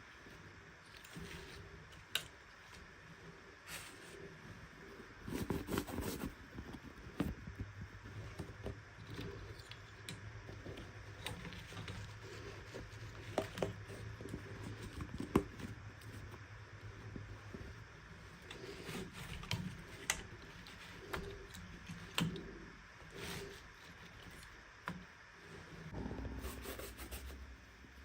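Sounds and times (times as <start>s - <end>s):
low steady hum: 0.0s - 28.0s.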